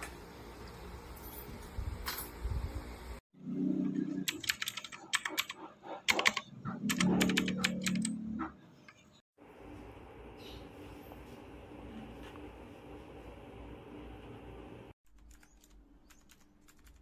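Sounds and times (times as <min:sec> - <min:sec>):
mechanical keyboard typing: 0:04.2 - 0:08.1, 0:15.1 - 0:17.0.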